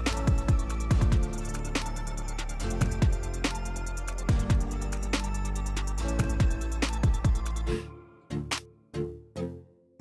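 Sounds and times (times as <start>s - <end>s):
bass-drum sweeps: 0.0s - 7.7s
electronic beat music: 0.0s - 8.7s.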